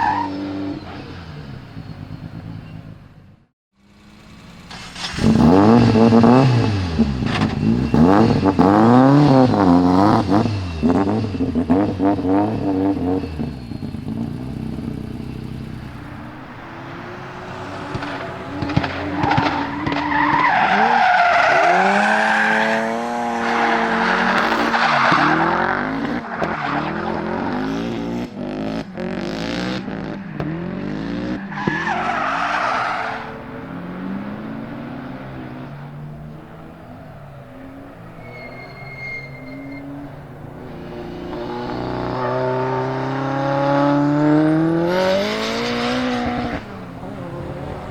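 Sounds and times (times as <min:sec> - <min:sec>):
car engine revving: 0:00.0 - 0:47.9
sharp engine cracks: 0:04.6 - 0:05.9
tyres squealing: 0:04.7 - 0:27.2, 0:31.4 - 0:43.5.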